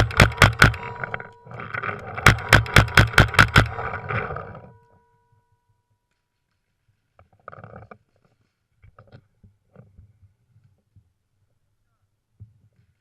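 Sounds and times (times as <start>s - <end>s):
airsoft gun firing: 0.0s - 1.0s, 2.2s - 4.0s.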